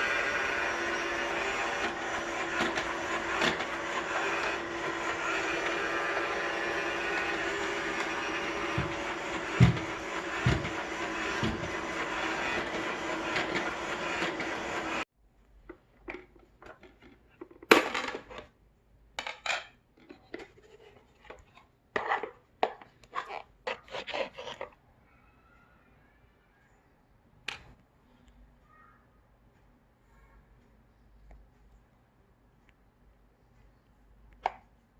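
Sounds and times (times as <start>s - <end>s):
robot vacuum running: 0.0s - 15.0s.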